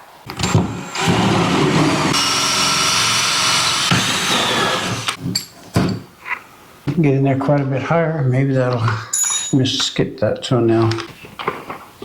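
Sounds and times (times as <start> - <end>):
power drill boring into wood: 0.4 - 5.2.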